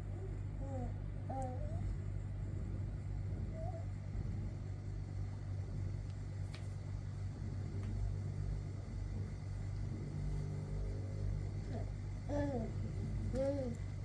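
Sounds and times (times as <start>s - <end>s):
clothes dryer humming and rumbling: 0.0s - 14.0s.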